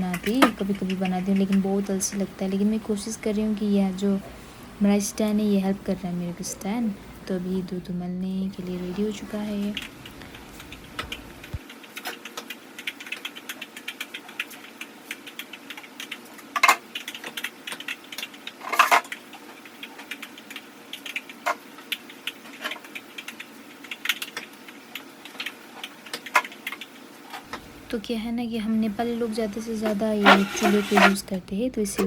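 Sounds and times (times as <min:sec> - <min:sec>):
wood fire crackling and popping: 0:08.5 - 0:28.0.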